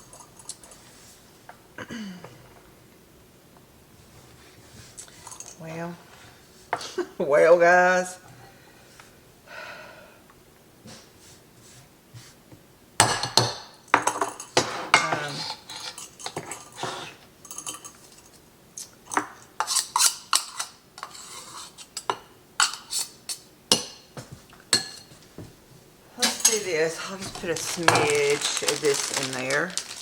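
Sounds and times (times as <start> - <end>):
utensils and dishes clinking: 0.0 - 0.8, 5.0 - 5.6, 13.0 - 25.2, 26.1 - 30.0.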